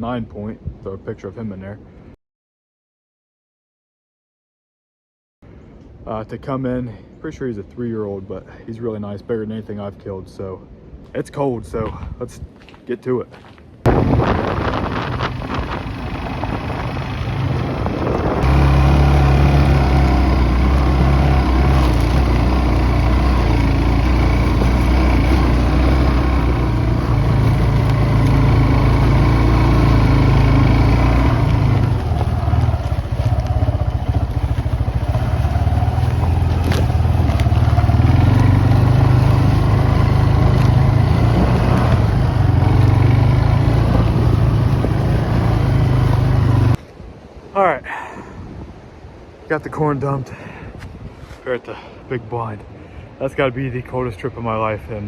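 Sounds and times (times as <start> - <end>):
atv engine running: 13.9 - 46.8.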